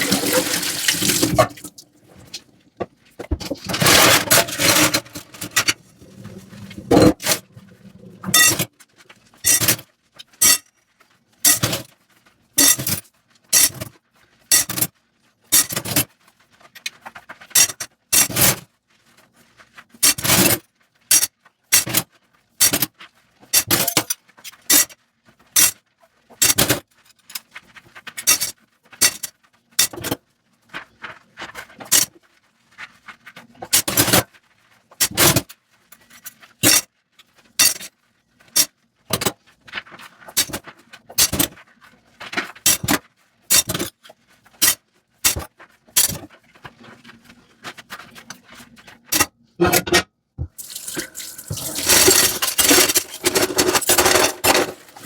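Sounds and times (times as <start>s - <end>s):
water rushing: 0.0s - 1.8s, 50.6s - 51.9s
dishes being scrubbed: 0.0s - 2.5s, 3.3s - 8.7s, 50.5s - 55.0s.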